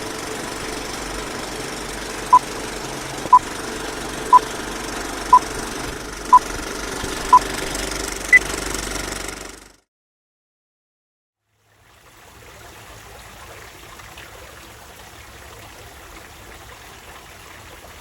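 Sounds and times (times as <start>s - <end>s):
rumbling mechanical drone: 0.0s - 9.8s.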